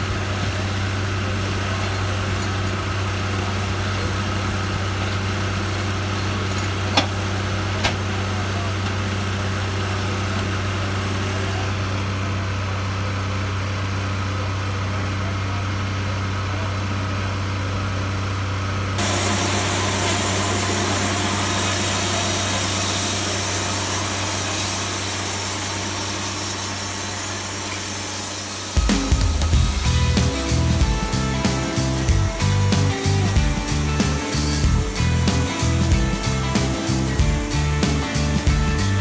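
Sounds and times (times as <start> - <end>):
sawmill engine humming: 18.9 - 39.0
sawing hiss: 19.0 - 38.9.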